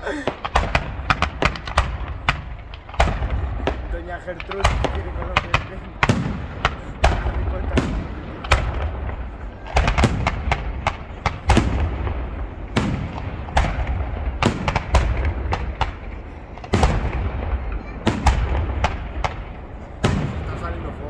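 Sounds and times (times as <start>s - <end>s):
fireworks sharp bangs: 0.0s - 21.0s
low rumble of booms: 0.0s - 21.0s.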